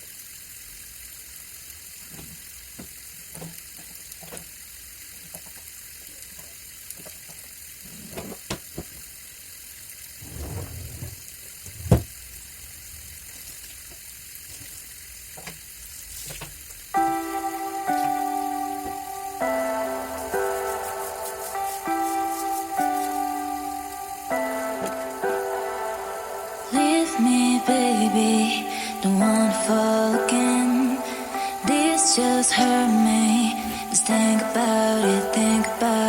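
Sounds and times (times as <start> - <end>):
running water: 0.0 - 36.0
background music: 17.0 - 36.0.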